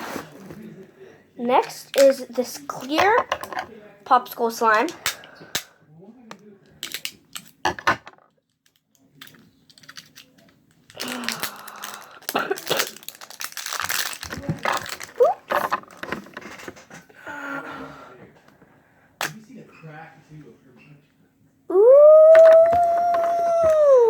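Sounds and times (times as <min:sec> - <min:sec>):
plastic crinkling: 0:08.6 - 0:16.8.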